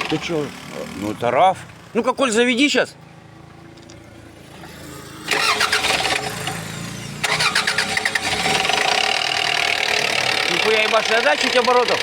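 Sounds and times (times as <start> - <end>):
car engine running: 0.0 - 1.4, 3.4 - 12.0
starter motor churning: 0.0 - 1.4, 3.8 - 12.0.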